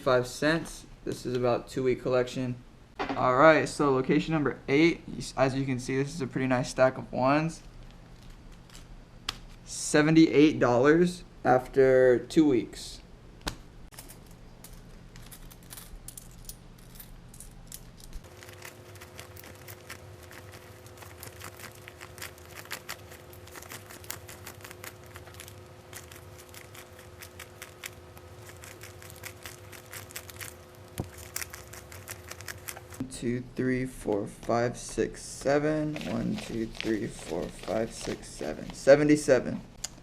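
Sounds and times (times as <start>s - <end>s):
faint steady hum: 0.0s - 40.0s
paper money rustling: 18.2s - 33.0s, 34.3s - 39.4s.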